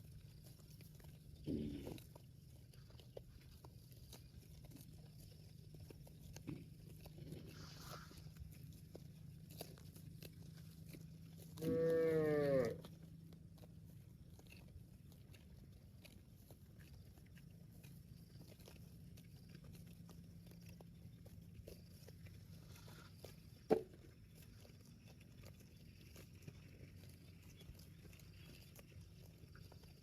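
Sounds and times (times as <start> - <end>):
cow mooing: 11.6 - 12.9.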